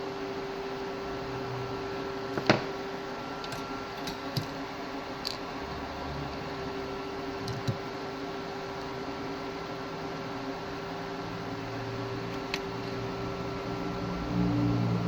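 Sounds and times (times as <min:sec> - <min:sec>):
fan humming: 0:00.0 - 0:15.0
tools tapping on circuit board: 0:07.4 - 0:07.8.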